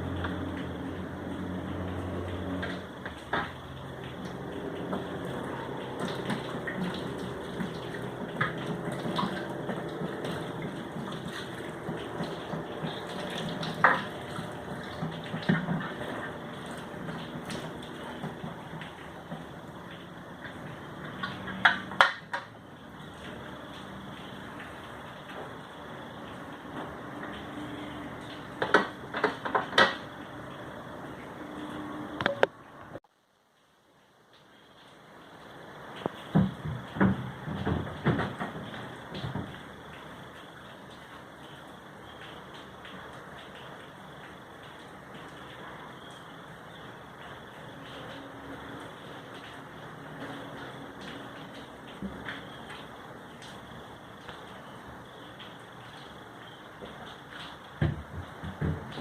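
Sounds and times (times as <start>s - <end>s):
water running from a tap: 0.0s - 31.6s
sharp knocks and clatters: 36.0s - 39.6s, 56.8s - 59.0s.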